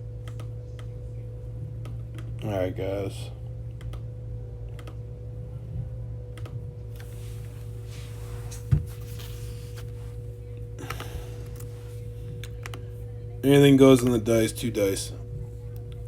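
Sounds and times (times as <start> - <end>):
steady electrical hum: 0.0 - 16.0
dull thump: 8.5 - 9.4.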